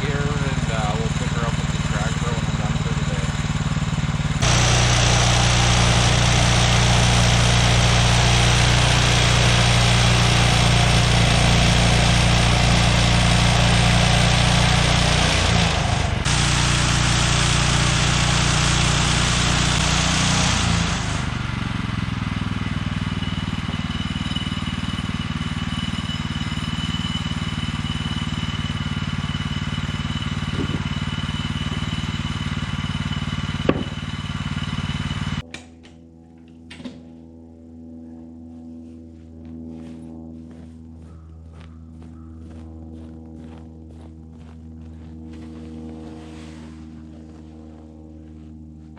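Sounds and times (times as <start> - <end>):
band blade sawing log: 0.0 - 21.4
sawmill engine running: 0.0 - 35.7.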